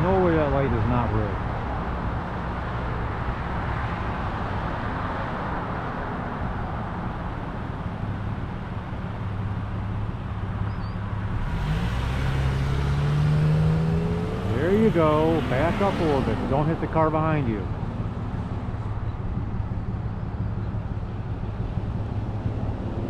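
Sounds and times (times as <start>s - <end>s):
car engines running: 0.0s - 23.0s
road and tyre noise: 0.0s - 23.0s
engine revving: 11.2s - 18.3s.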